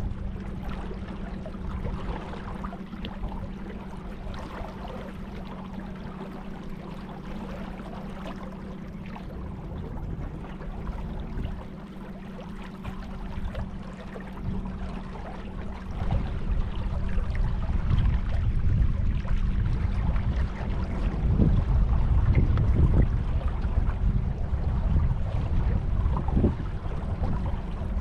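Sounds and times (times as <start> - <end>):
boat motor running: 0.0 - 28.0
water splashing along hull: 0.0 - 28.0.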